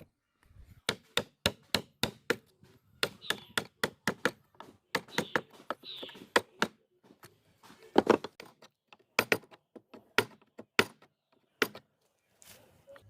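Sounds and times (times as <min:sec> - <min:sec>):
chisel tapping wood: 0:00.9 - 0:06.8.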